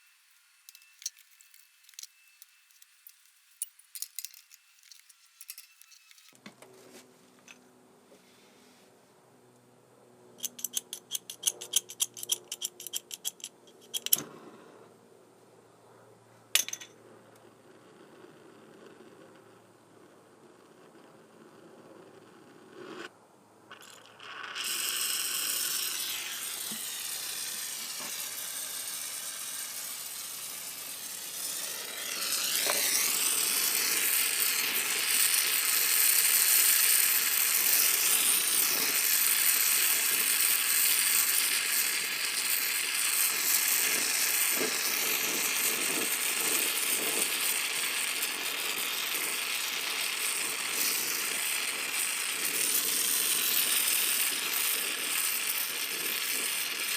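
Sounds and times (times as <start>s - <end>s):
torch flame hissing: 23.7s - 56.9s.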